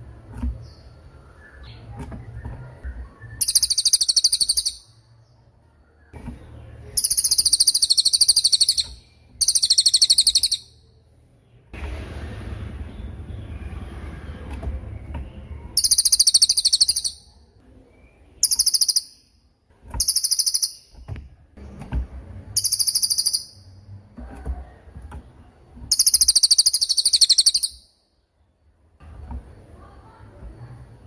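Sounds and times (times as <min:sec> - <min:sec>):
low background noise: 0:00.0 - 0:31.0
bird high rapid trills: 0:15.8 - 0:17.2.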